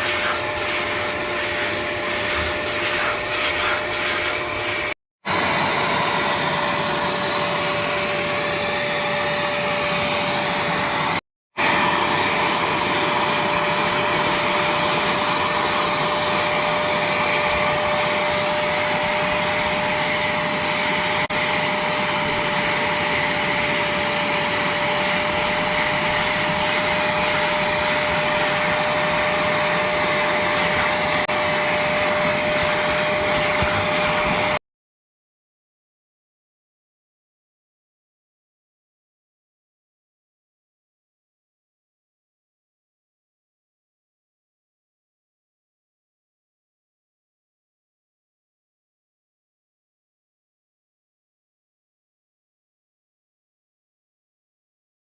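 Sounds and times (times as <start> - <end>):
carpet cleaner suction motor: 0.0 - 34.6.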